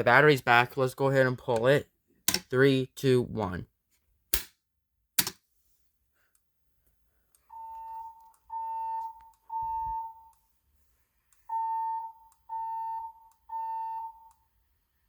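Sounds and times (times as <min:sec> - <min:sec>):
fire alarm evacuation beeps: 0:07.5 - 0:10.4, 0:11.5 - 0:14.5.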